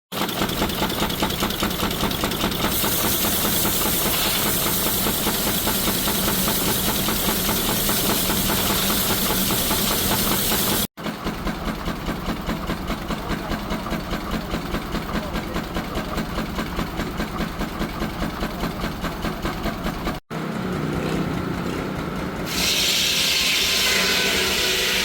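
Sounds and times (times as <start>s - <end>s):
steam traction engine running: 0.1s - 25.0s
loud hiss of steam: 2.6s - 10.9s, 22.5s - 25.0s.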